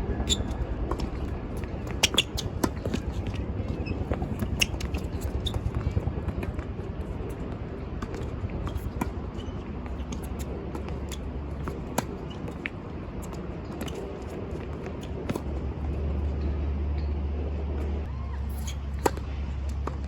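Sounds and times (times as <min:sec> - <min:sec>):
wind buffeting microphone: 0:00.0 - 0:12.2.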